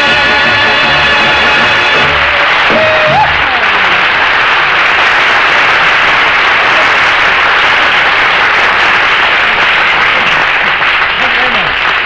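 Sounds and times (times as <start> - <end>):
studio audience applauding: 0.0 - 12.0.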